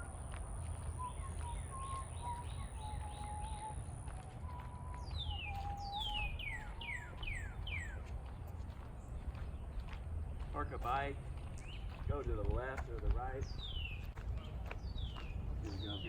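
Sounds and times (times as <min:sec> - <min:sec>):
wavering bird whistle: 0:00.0 - 0:08.0
songbirds chirping: 0:00.0 - 0:16.0.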